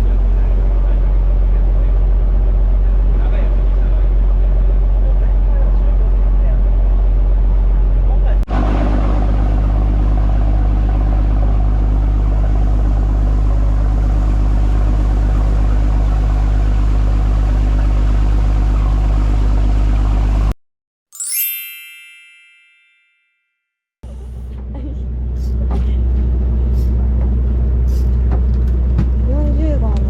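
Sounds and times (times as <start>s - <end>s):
boat engine humming: 0.0s - 20.5s, 24.0s - 30.0s
bell-like chime: 21.2s - 23.7s.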